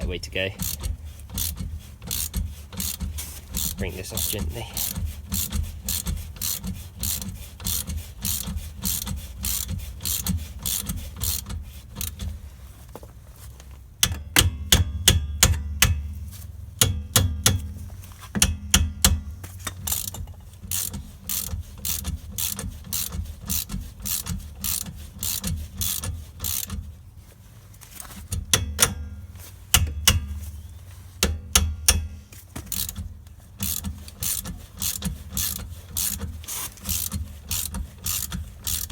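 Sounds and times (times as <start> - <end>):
ratchet wrench clicking: 0.0 - 12.3, 18.4 - 26.9, 31.2 - 38.9.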